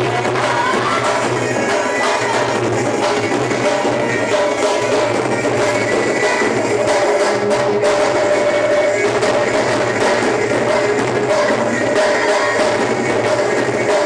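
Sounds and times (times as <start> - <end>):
loud music: 0.0 - 14.0.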